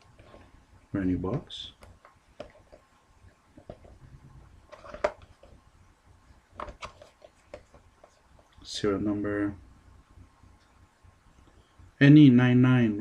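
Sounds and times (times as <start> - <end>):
card box clicks and rustles: 6.6 - 7.8.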